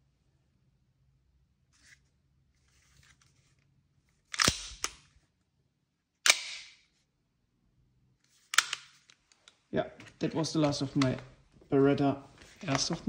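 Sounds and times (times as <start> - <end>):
pistol slide snapping: 4.3 - 5.0, 6.2 - 6.8, 8.5 - 9.0
handling noises: 8.3 - 11.7, 12.3 - 13.0.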